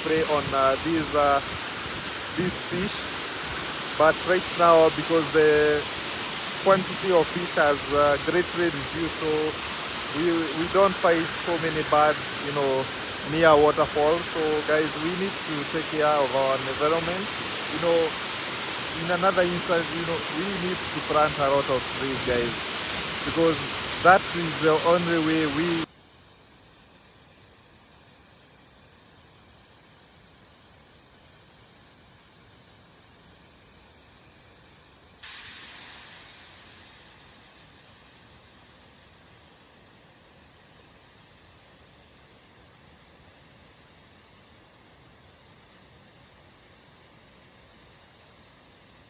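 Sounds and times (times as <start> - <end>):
soft wash of noise: 0.0 - 25.9, 35.2 - 38.6
high-pitched electronic hiss: 0.0 - 49.0.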